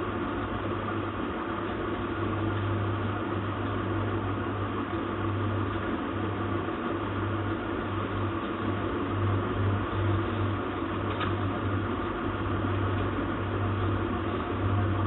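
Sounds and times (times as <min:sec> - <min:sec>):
low hum: 0:00.0 - 0:15.0.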